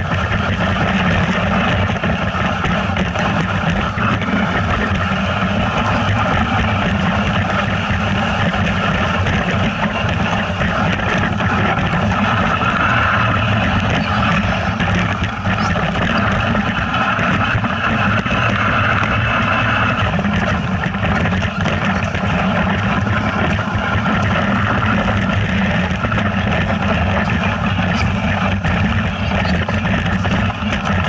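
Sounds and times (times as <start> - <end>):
vehicle engine running: 0.0 - 31.0.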